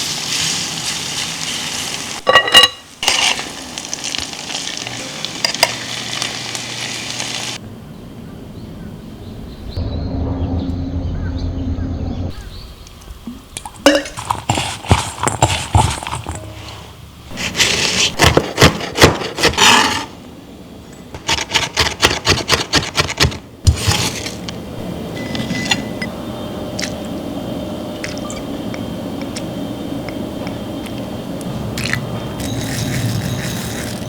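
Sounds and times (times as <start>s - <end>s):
steady hiss: 0.0s - 7.6s
knife chopping on cutting board: 17.6s - 20.0s.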